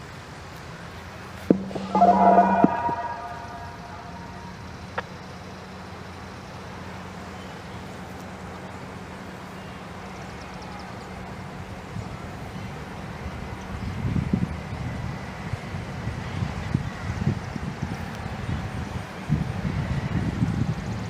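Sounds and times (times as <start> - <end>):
low steady hum: 1.5 - 4.9.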